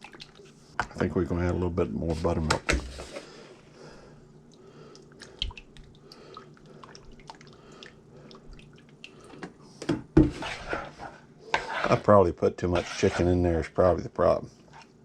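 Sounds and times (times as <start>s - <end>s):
buttermilk dripping and squelching: 0.0s - 0.7s, 4.3s - 9.6s.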